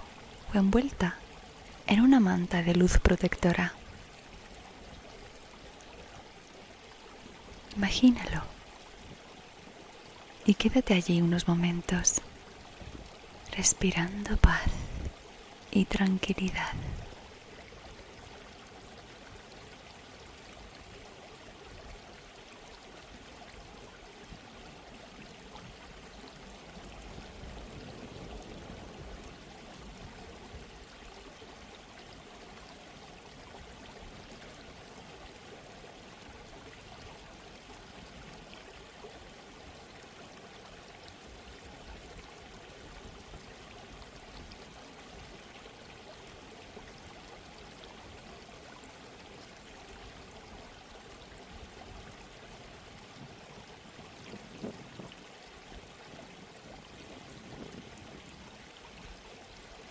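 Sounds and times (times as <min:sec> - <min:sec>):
gently flowing stream: 0:00.0 - 0:59.9.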